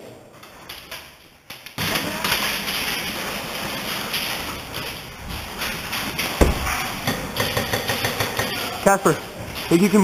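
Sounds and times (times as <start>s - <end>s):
heavy thump: 6.4s - 7.2s.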